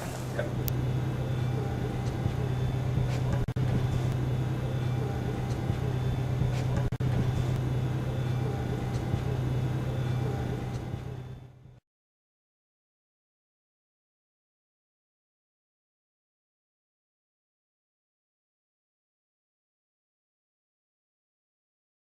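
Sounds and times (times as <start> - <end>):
grinder machine hum: 0.0 - 11.8.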